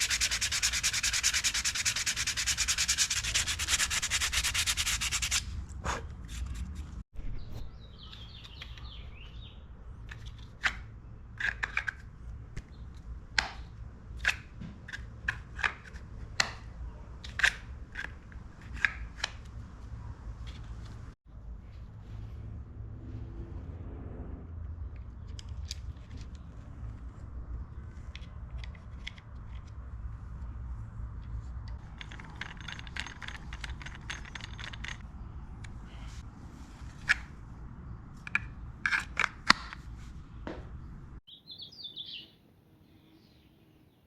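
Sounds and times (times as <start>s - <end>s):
sandpaper rasping: 0.0s - 5.6s.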